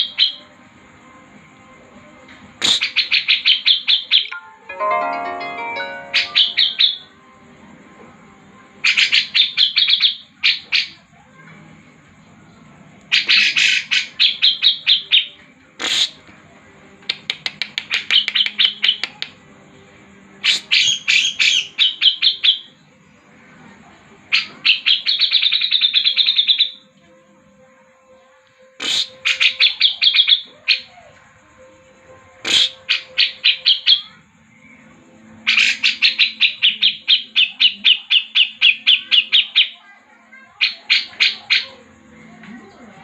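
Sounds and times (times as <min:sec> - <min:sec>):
songbird rapid high chirps: 0:00.0 - 0:00.6, 0:02.6 - 0:04.4, 0:05.8 - 0:07.2, 0:08.8 - 0:11.1, 0:13.1 - 0:16.2, 0:17.0 - 0:19.4, 0:20.4 - 0:23.2, 0:24.2 - 0:26.9, 0:28.8 - 0:31.2, 0:32.4 - 0:39.8, 0:40.5 - 0:42.0.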